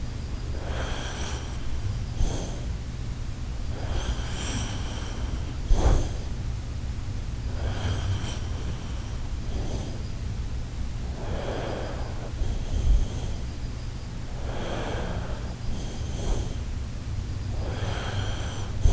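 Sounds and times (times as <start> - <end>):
low steady hum: 0.0 - 18.9
dog snoring: 7.5 - 10.1, 14.3 - 16.7, 17.5 - 18.9.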